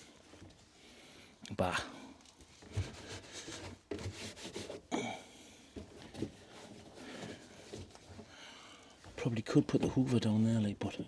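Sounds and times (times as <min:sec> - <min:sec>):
rubbing and scraping strokes: 0:02.6 - 0:04.9.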